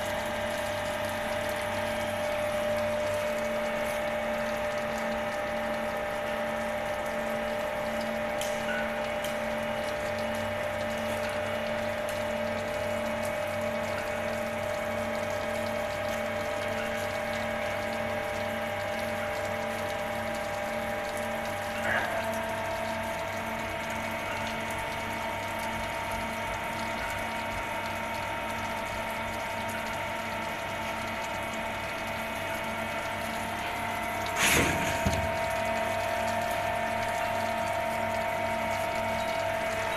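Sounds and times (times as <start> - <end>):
machine whine over pulsing hum: 0.0 - 39.9
loud machine clatter: 34.4 - 35.6.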